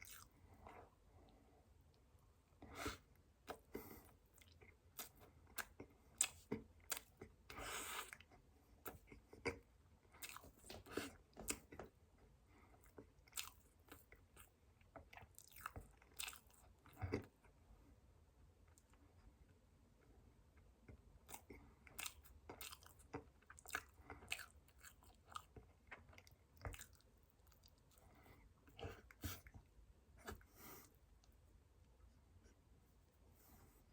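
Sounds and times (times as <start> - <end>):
chewing and biting cake: 0.0 - 1.0, 2.8 - 11.9, 12.8 - 17.4, 21.2 - 29.6.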